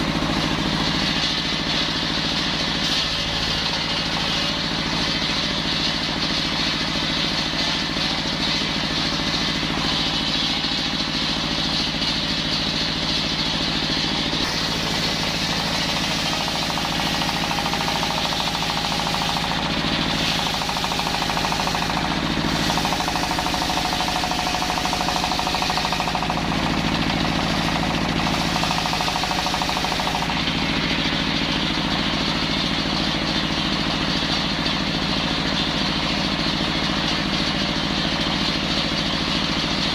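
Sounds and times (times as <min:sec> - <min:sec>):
circular saw running: 0:00.0 - 0:39.9
saw blade cutting wood: 0:13.4 - 0:31.0.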